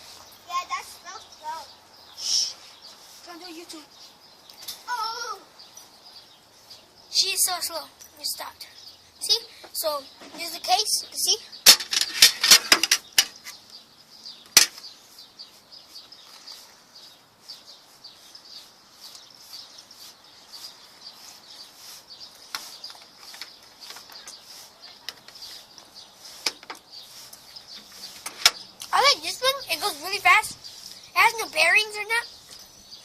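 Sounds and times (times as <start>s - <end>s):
faint high chirping: 0.0s - 33.0s.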